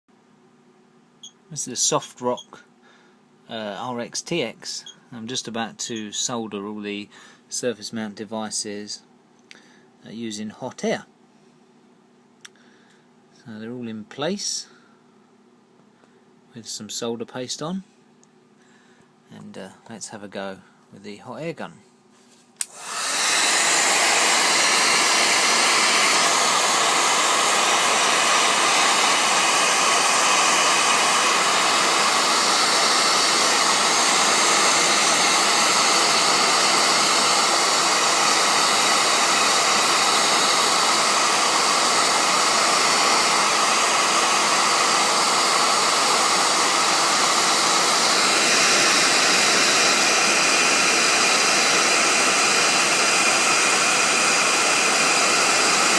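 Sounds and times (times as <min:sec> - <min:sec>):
hot air gun blowing: 0:22.6 - 0:55.9.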